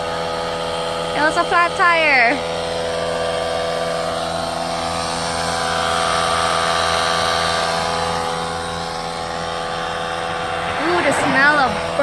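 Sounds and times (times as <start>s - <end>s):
steady vehicle hum: 0.0s - 12.0s
rush of noise: 8.6s - 12.0s.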